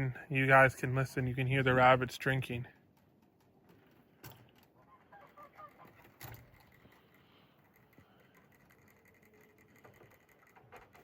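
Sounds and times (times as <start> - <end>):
rabbits drinking water: 2.8 - 11.0.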